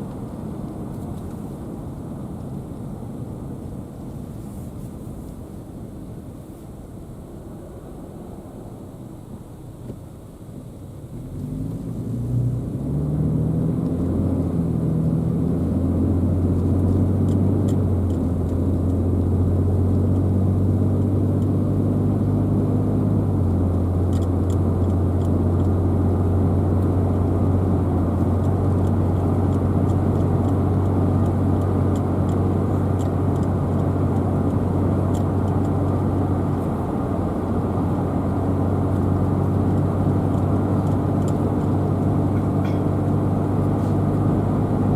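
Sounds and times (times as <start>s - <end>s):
road noise: 0.0s - 44.9s
car engine accelerating: 11.1s - 44.9s.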